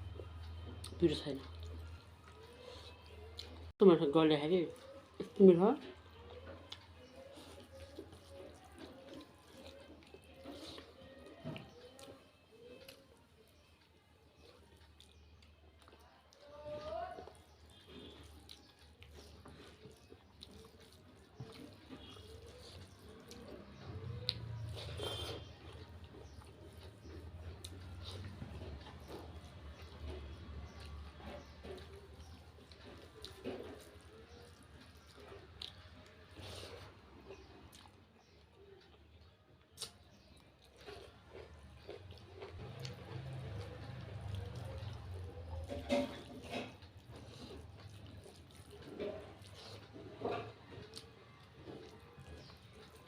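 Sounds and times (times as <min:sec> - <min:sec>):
person chewing food: 0:00.0 - 0:03.7, 0:04.5 - 0:53.0
wet eating sounds: 0:00.0 - 0:53.0
mouth clicks: 0:39.7 - 0:40.2.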